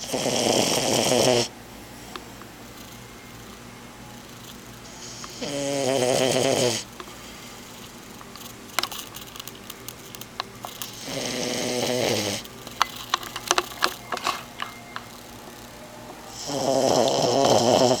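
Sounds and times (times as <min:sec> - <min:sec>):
puppy snoring: 0:00.0 - 0:01.5, 0:04.2 - 0:08.1, 0:10.7 - 0:12.5, 0:16.2 - 0:18.0.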